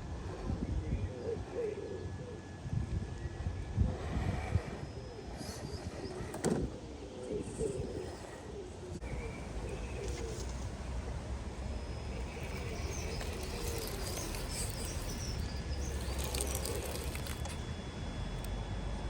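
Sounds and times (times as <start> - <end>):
birds chirping: 6.9 - 18.5
low outdoor rumble: 8.6 - 19.0.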